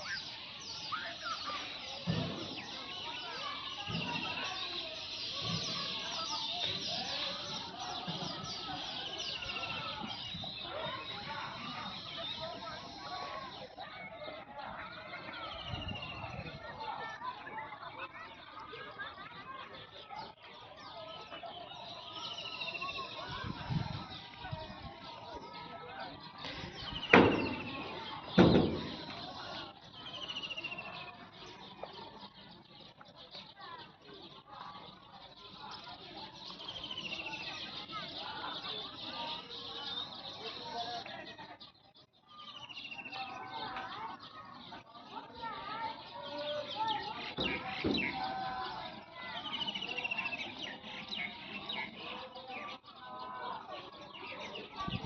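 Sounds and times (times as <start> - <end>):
fast bird trill: 0.0 - 13.8
flock of birds chirping: 0.0 - 55.0
loud thumps: 27.1 - 29.2.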